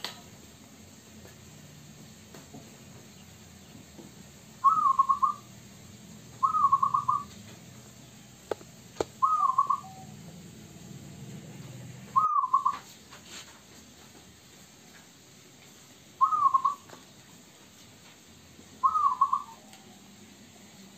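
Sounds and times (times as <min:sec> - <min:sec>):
dove cooing: 0:04.6 - 0:05.5, 0:06.4 - 0:07.4, 0:09.2 - 0:10.2, 0:12.2 - 0:12.9, 0:16.2 - 0:16.9, 0:18.8 - 0:19.6.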